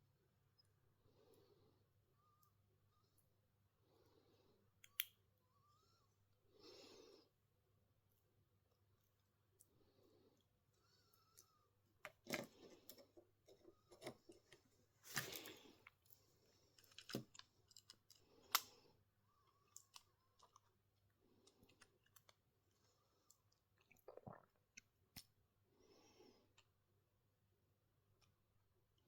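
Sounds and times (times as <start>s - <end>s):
small parts and tools clicking: 16.7s - 18.8s.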